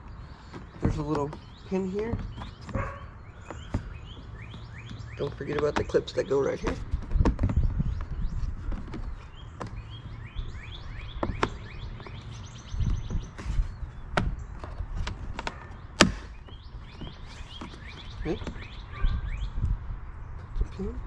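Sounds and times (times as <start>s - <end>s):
small birds chirping: 0.0s - 21.0s
plastic panel clicks and knocks: 0.5s - 9.8s, 11.1s - 18.7s.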